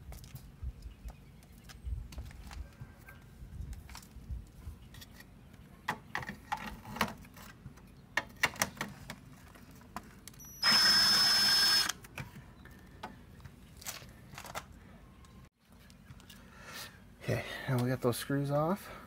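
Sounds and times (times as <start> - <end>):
power drill running: 10.5 - 12.0.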